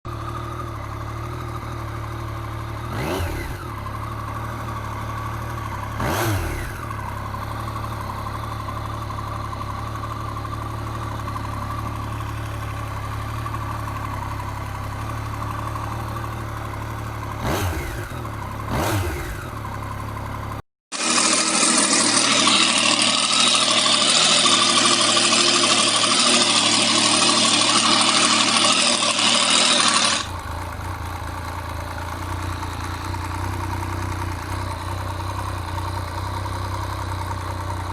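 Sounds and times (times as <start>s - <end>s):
motorcycle engine idling and revving: 0.0s - 37.9s
hissing engine noise: 20.9s - 30.7s.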